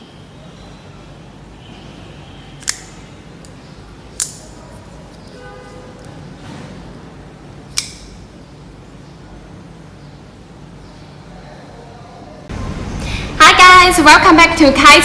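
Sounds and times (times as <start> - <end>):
folding knife blade clicking: 2.6 - 3.6, 4.2 - 4.6, 7.7 - 8.2.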